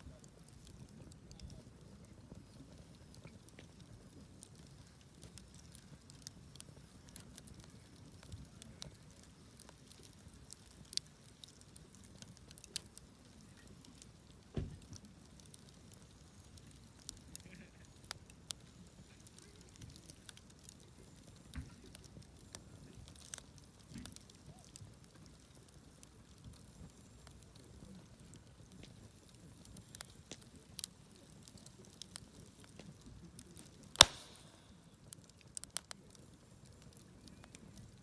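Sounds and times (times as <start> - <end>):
campfire crackling: 0.0 - 38.0
loud wood snap: 34.0 - 34.8.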